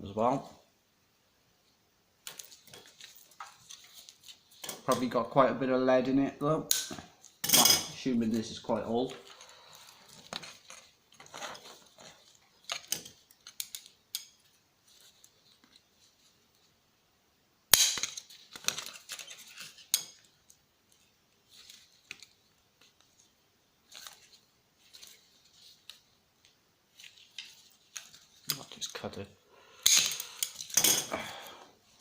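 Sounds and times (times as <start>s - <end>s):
tools and parts clicking and rattling: 10.1s - 14.5s, 29.8s - 31.2s.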